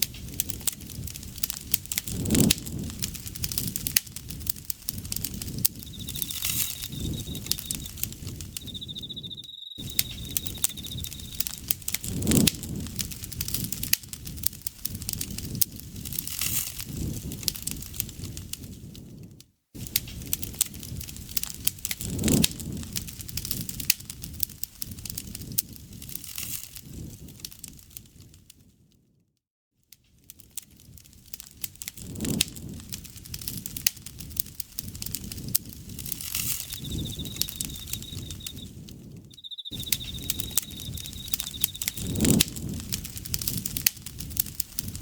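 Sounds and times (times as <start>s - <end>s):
campfire crackling and popping: 0.0s - 28.4s, 30.2s - 45.0s
low rush of flames: 0.0s - 28.4s, 30.4s - 45.0s
insect trilling: 5.4s - 11.7s, 36.0s - 42.4s.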